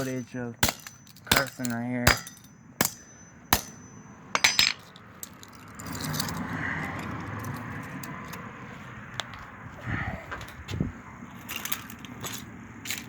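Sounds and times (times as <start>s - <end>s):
hammer clinking on toy cars: 0.0s - 8.4s
rough handling noise: 0.0s - 9.5s, 10.3s - 13.0s.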